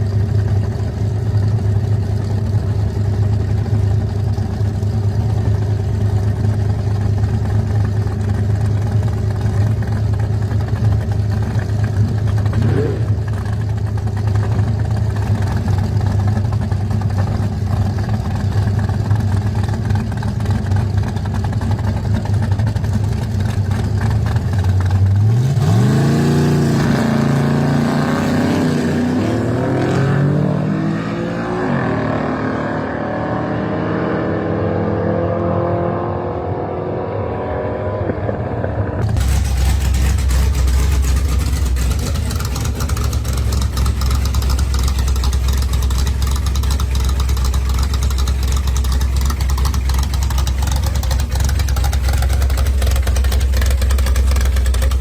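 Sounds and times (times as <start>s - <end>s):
car engine idling and revving: 0.0s - 55.0s.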